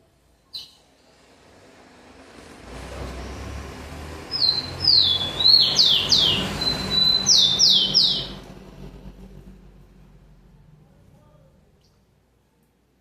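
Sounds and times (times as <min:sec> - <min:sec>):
sparrow singing: 0:00.5 - 0:00.9, 0:04.2 - 0:08.4.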